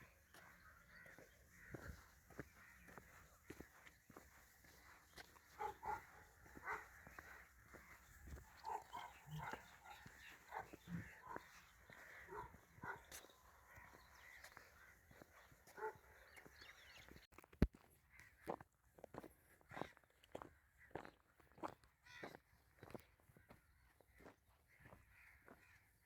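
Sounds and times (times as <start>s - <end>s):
faint dog barking: 5.4s - 16.7s.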